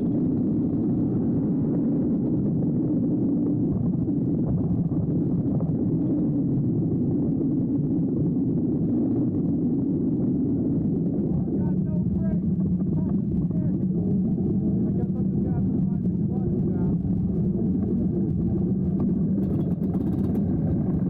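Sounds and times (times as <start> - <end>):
two-stroke engine running: 19.3 - 21.0.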